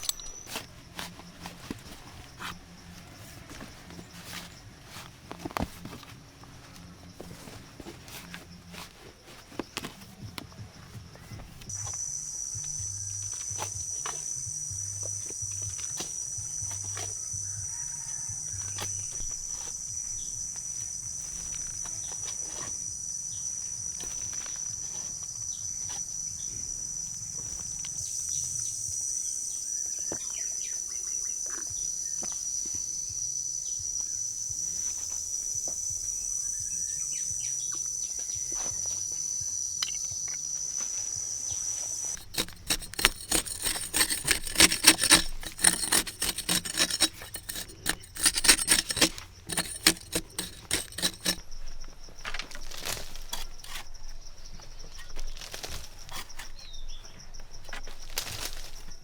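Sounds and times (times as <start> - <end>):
rhythmic rasping: 42.2 - 51.4.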